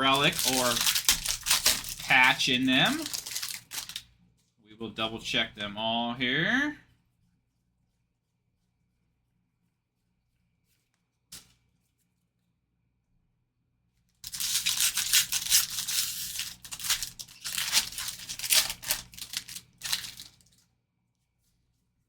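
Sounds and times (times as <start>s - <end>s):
foil wrapper crinkling and tearing: 0.0s - 4.1s, 14.2s - 20.6s.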